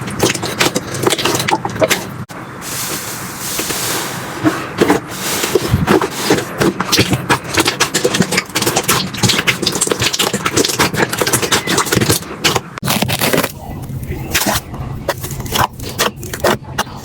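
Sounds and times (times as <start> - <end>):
slime crackling and popping: 6.8 - 13.6.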